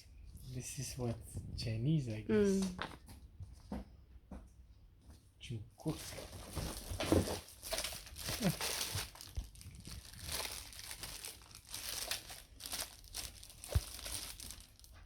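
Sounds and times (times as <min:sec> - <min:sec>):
packaging crinkling and rustling: 0:05.9 - 0:15.0.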